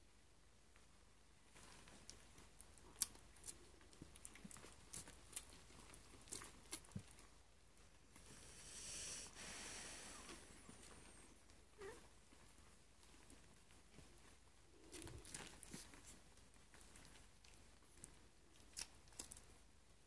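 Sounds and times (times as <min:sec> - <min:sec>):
puppies clicking and scratching: 0:01.5 - 0:08.0, 0:12.2 - 0:19.6.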